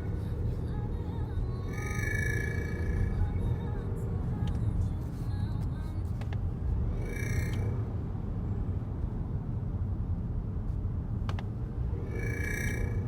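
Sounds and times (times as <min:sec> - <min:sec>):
engine and road rumble: 0:00.0 - 0:13.0
high warbling chirp: 0:01.7 - 0:03.3, 0:07.0 - 0:07.7, 0:12.0 - 0:13.0.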